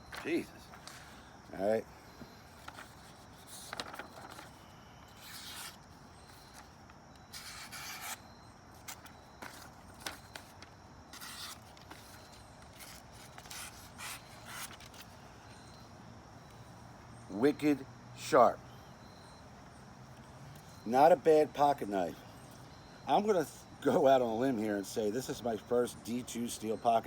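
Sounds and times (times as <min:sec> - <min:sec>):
knife slicing paper: 0:02.7 - 0:05.8, 0:07.3 - 0:08.2, 0:08.8 - 0:15.0.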